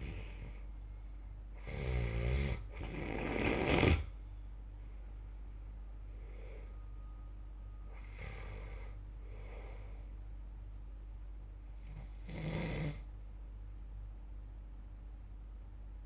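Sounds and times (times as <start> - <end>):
person snoring: 1.6 - 4.2, 11.9 - 13.1
soft breaths: 2.8 - 10.3.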